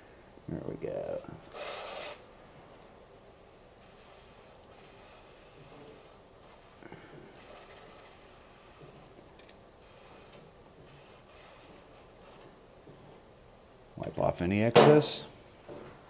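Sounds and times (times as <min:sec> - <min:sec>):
spray lube hissing: 0:01.0 - 0:02.2, 0:03.8 - 0:09.1, 0:09.8 - 0:12.4.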